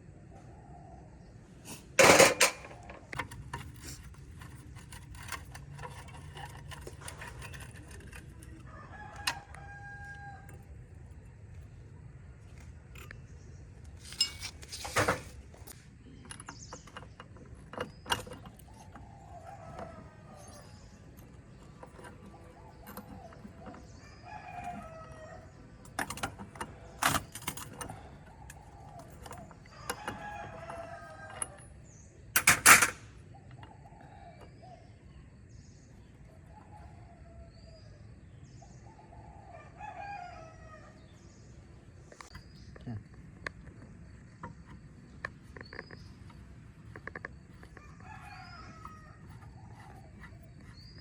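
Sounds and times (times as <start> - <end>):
sharp knocks and clanks: 2.0 - 8.4
rooster crowing: 8.6 - 10.8, 24.0 - 25.8, 29.7 - 31.7, 39.0 - 41.2, 47.5 - 50.3.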